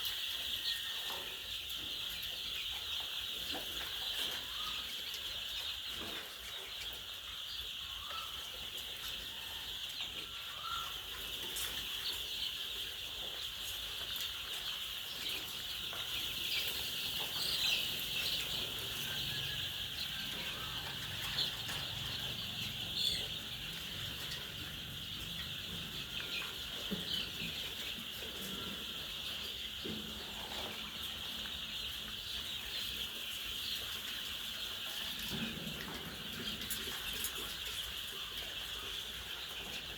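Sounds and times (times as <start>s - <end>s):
hens clucking: 0.0s - 39.9s.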